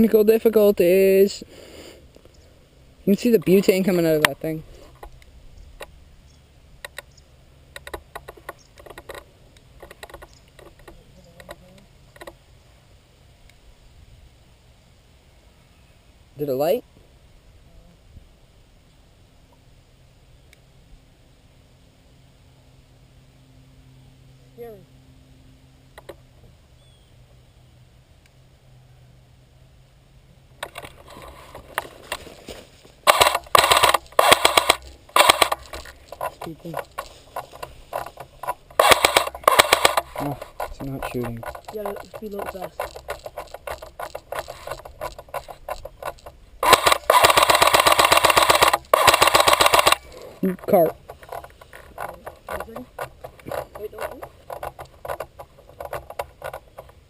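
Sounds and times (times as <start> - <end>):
airsoft gun firing: 33.0 - 35.8, 38.8 - 40.1, 46.6 - 50.0.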